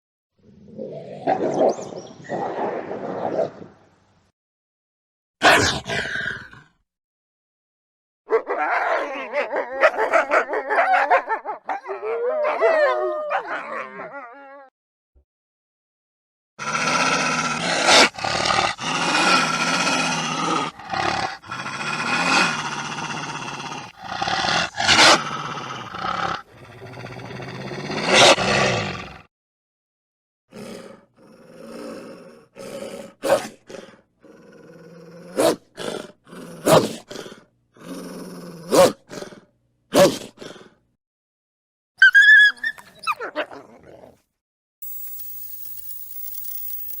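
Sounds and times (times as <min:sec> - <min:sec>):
wolf growling and snarling: 0:05.4 - 0:06.8, 0:16.6 - 0:29.3, 0:30.5 - 0:40.8, 0:43.2 - 0:44.3.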